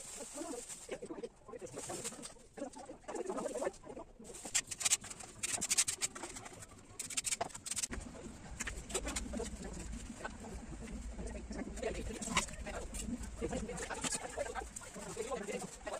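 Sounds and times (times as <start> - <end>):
scratching and clicking: 1.2 - 15.9.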